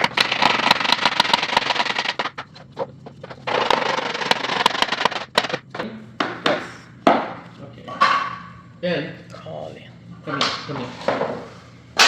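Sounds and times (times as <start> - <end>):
scraping rubbing noise: 0.0 - 5.6.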